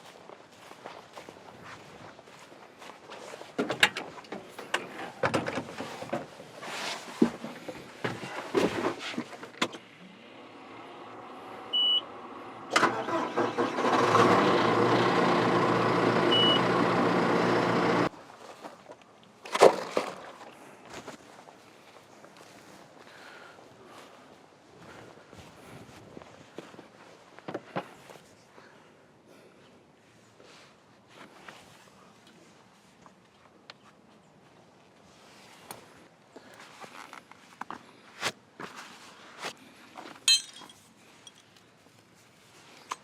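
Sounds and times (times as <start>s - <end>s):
tractor engine running: 10.0s - 18.1s
short high beeps: 11.7s - 12.0s.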